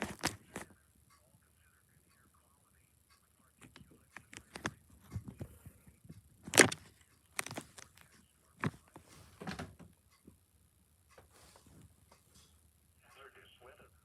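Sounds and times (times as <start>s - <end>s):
objects knocking and clicking: 0.0s - 0.6s, 6.4s - 8.0s.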